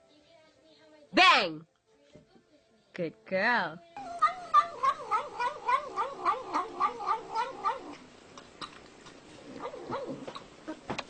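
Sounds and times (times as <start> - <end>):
cat warbling yowl: 4.0 - 8.0.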